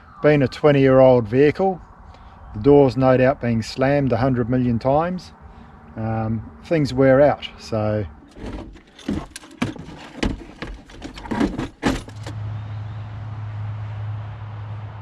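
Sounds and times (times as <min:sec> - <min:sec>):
clicks knocks and rattles: 0:08.2 - 0:12.3.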